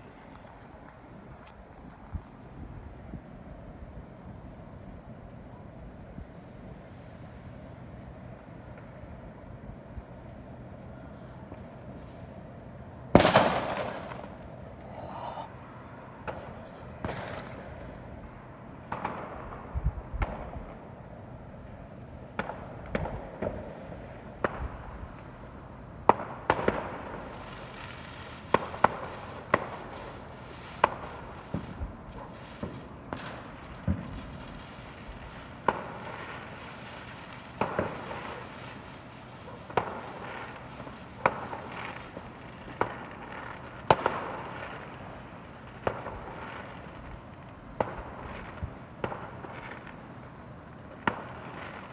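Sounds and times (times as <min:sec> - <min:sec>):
fireworks crackle and hiss: 0:00.0 - 0:04.4, 0:11.4 - 0:51.9
fireworks bangs: 0:13.1 - 0:15.5, 0:16.2 - 0:18.0, 0:26.1 - 0:50.2, 0:50.9 - 0:51.9.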